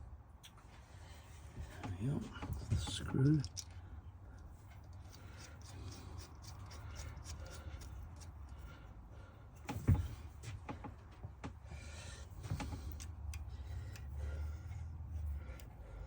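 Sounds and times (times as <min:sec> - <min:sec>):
low steady hum: 0:00.0 - 0:16.0
small metal parts clicking: 0:03.0 - 0:03.8.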